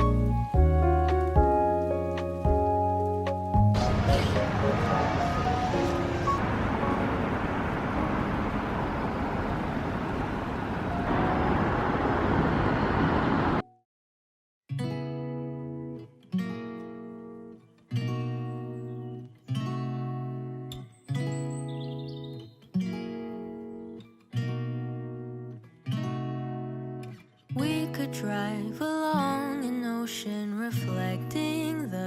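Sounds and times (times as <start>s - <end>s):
acoustic guitar chords strummed: 0.0s - 9.0s
low rumbling noise: 3.7s - 13.6s.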